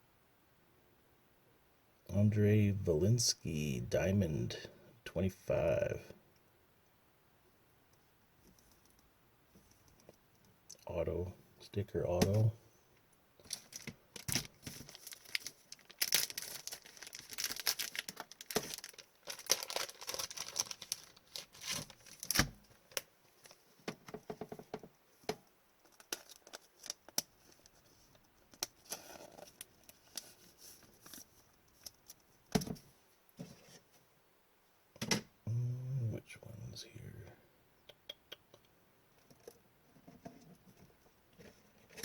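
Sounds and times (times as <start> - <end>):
paper rustling: 13.4 - 22.6
plastic crinkling: 13.4 - 23.6, 25.8 - 32.2.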